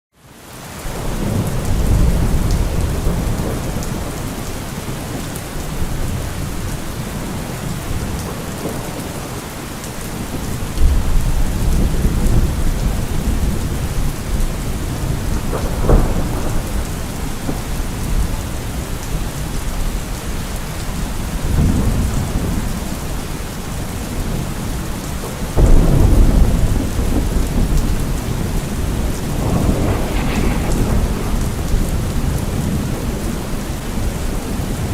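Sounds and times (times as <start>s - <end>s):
heavy rain: 0.2s - 34.9s
rolling thunder: 0.9s - 5.2s, 10.2s - 20.5s, 25.5s - 34.9s
sharp thunder crack: 25.6s - 34.9s.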